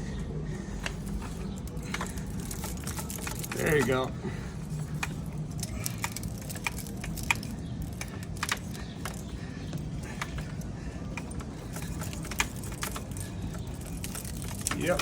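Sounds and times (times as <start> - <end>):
low street rumble: 0.0 - 15.0
wire strands snapping: 0.8 - 15.0.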